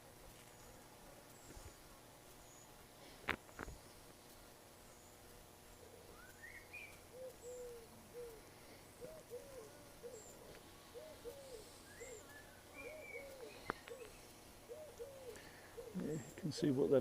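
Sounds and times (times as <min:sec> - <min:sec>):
small bird chirping: 0:04.8 - 0:16.7
pigeon cooing: 0:05.8 - 0:16.4.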